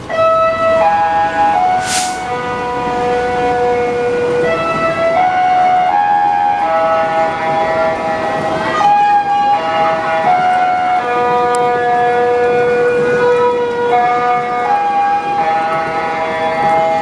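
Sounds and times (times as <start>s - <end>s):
short hiss: 1.8s - 2.3s.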